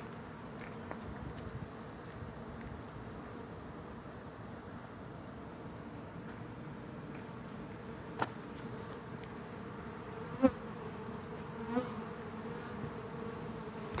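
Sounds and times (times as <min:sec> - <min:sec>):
bee swarm humming: 0:05.5 - 0:14.0
bee buzzing past microphone: 0:07.7 - 0:14.0.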